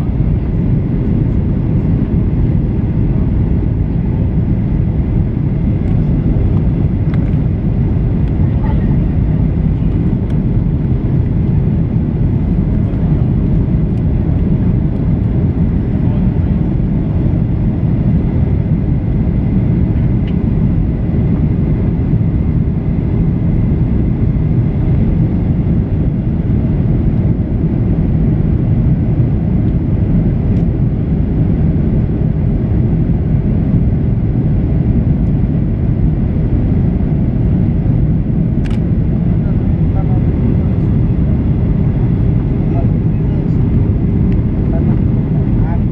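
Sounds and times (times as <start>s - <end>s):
airliner cabin noise: 0.0s - 45.9s
faint whine: 0.0s - 45.9s
small click: 38.6s - 38.8s.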